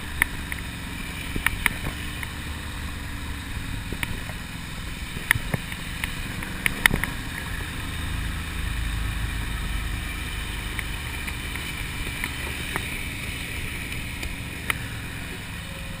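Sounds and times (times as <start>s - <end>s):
motorcycle engine running: 0.0s - 16.0s
sharp clicks: 1.3s - 2.3s, 5.2s - 7.5s.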